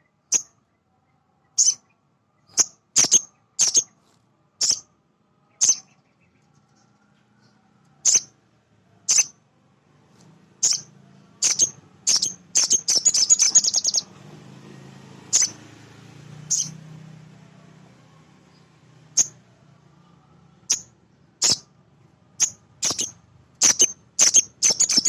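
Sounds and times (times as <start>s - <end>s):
bird chirping: 0.0s - 8.4s, 9.0s - 9.4s, 10.2s - 14.3s, 15.2s - 15.7s, 16.4s - 16.8s, 18.5s - 19.4s, 20.6s - 21.7s, 22.4s - 25.0s.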